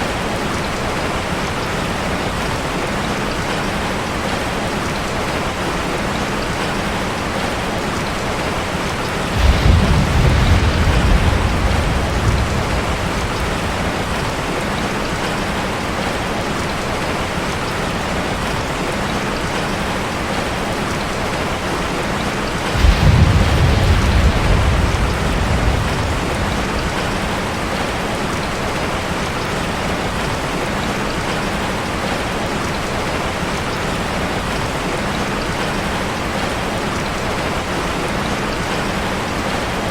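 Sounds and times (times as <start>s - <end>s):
steady rain hiss: 0.0s - 39.9s
low rolls of thunder: 9.2s - 16.2s, 22.5s - 29.0s.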